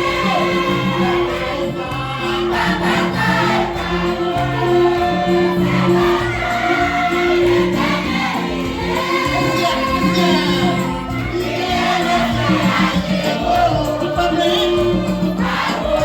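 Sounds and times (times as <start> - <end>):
choir singing a hymn: 0.0 - 16.0
instrumental accompaniment: 0.0 - 16.0.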